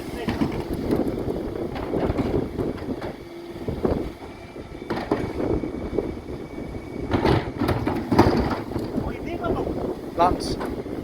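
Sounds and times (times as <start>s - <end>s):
diesel truck engine rumble: 0.0s - 11.0s
sharp knocks and clatters: 7.1s - 9.0s.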